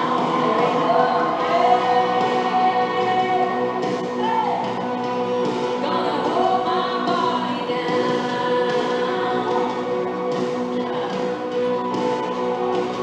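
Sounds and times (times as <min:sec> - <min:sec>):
choir singing gospel music: 0:00.0 - 0:13.0.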